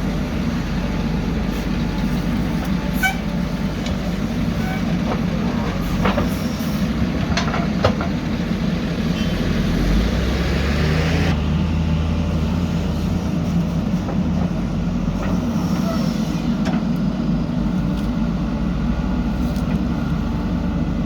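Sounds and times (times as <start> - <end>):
heavy machinery diesel engines: 0.0 - 21.0.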